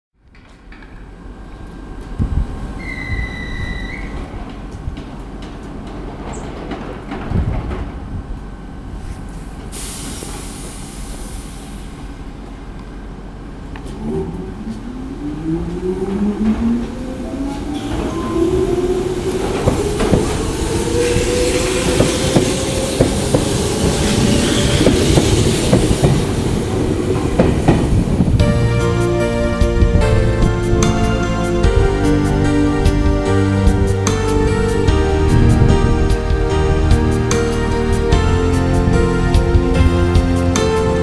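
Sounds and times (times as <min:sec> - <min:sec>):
wheels clicking over rail joints: 0:04.4 - 0:08.1
gentle instrumental music: 0:28.4 - 0:41.0.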